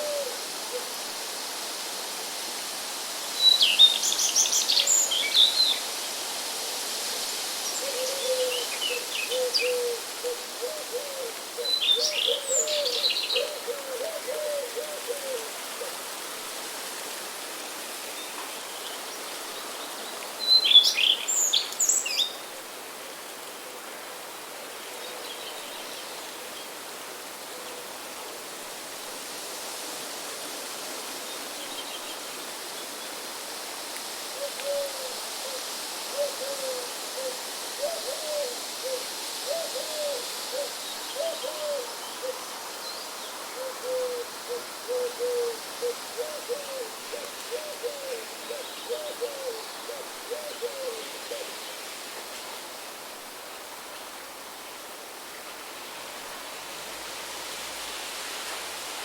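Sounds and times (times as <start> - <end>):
rushing hiss: 0.0 - 59.0
bird hooting: 43.6 - 51.5.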